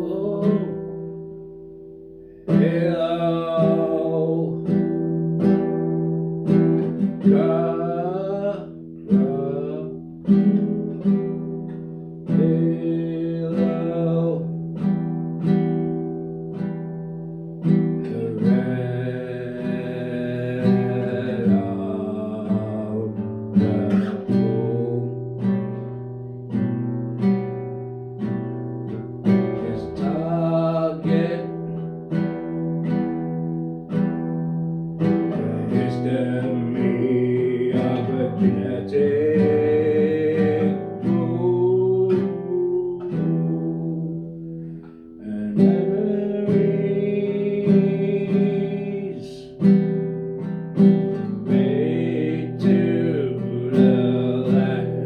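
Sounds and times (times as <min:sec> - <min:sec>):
acoustic guitar instrumental: 0:00.0 - 0:55.0.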